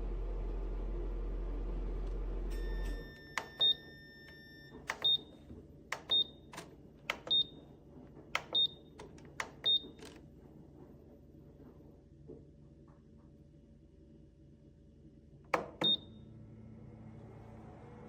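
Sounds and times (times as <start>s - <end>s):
held electronic beep: 2.5s - 5.3s
sharp clicks: 5.9s - 7.4s.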